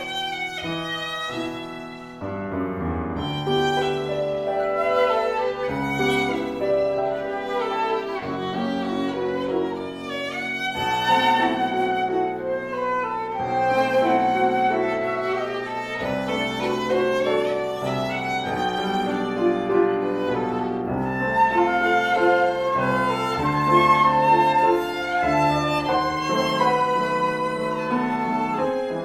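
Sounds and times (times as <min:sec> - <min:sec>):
violin melody: 0:00.0 - 0:29.0.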